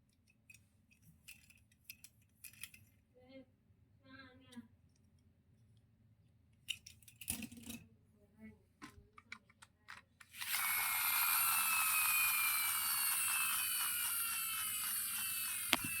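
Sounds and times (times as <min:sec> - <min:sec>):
small electric motor whining: 0:10.4 - 0:16.0
small clicks and ticks: 0:12.6 - 0:16.0.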